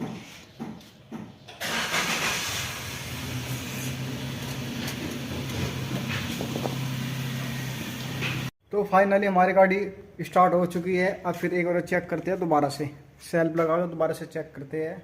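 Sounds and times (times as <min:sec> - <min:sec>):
starter motor cranking: 0:01.6 - 0:03.6.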